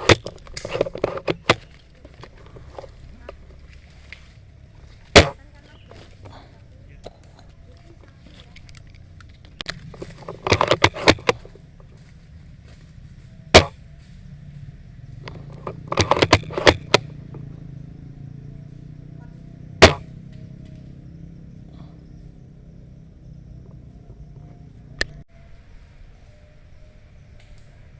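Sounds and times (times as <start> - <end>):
rapid airsoft gunfire: 13.5 - 13.8, 19.8 - 20.1
single sharp airsoft shots: 13.6 - 13.8, 19.8 - 20.1.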